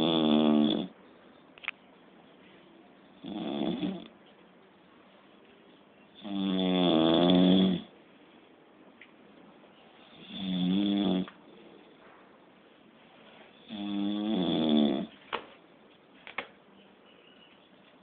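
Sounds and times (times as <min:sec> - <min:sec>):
pig-like snoring: 0:00.0 - 0:00.9, 0:03.2 - 0:04.1, 0:06.2 - 0:07.9, 0:10.2 - 0:11.3, 0:13.6 - 0:15.1.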